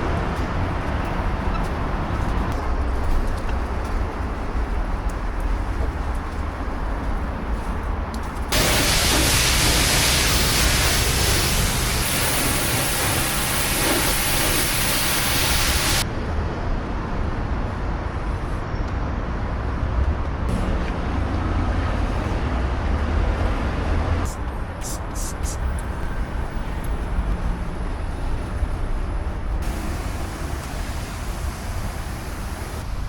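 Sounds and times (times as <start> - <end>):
high-pressure water spray hissing: 8.5 - 16.0, 24.3 - 25.9, 29.6 - 33.0.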